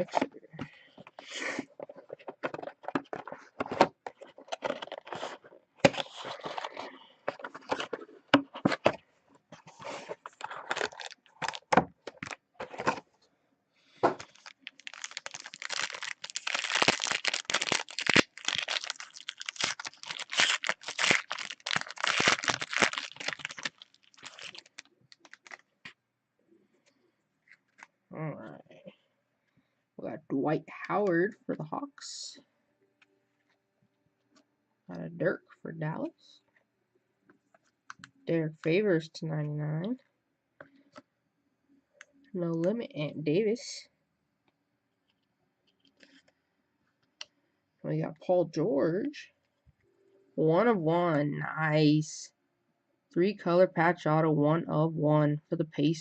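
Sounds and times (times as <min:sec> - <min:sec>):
plastic wrapping crinkling and tearing: 0:04.1 - 0:08.0, 0:09.7 - 0:12.9, 0:14.1 - 0:25.7.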